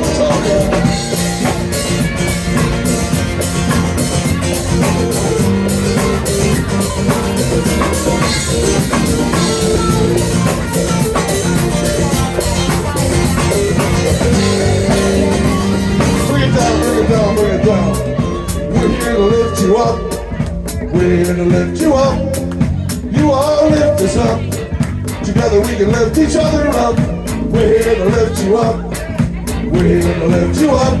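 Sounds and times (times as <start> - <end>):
guitar solo: 0.0 - 20.9
drum kit beat: 0.0 - 31.0.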